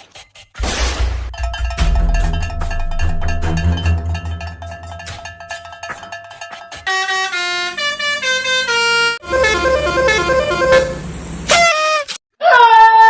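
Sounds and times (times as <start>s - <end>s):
multi-tone bus horn tune: 6.9s - 12.2s
short horn blast: 6.9s - 12.2s.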